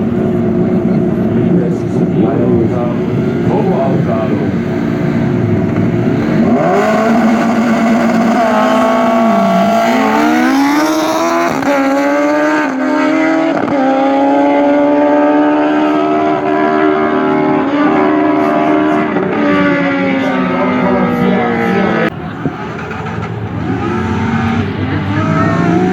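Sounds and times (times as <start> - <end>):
engine revving hard: 5.8 - 25.9.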